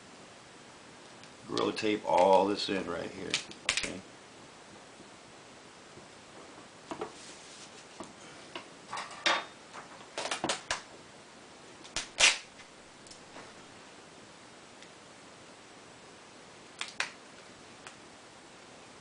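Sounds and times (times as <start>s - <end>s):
tape ripping off roll: 11.9s - 12.5s.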